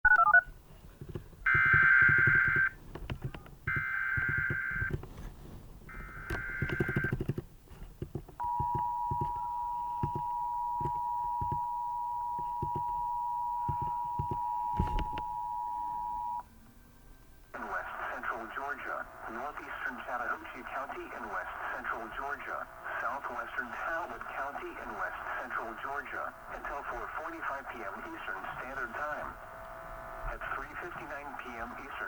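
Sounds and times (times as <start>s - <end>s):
low clicks and crackle: 5.8s - 8.4s
two-tone attention signal: 8.4s - 16.4s.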